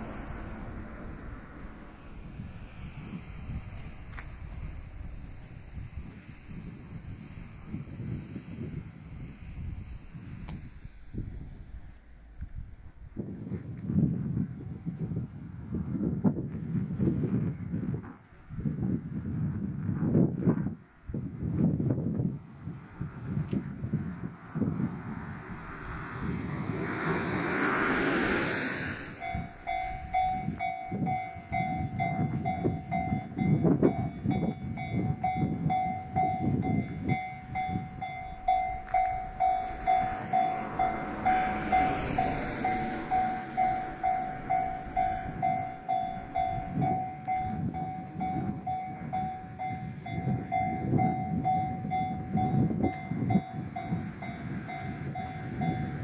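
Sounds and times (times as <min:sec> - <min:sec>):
diesel train rumbling past: 0:00.0 - 0:19.8, 0:20.6 - 0:56.0
level crossing bell clanging: 0:29.2 - 0:56.0.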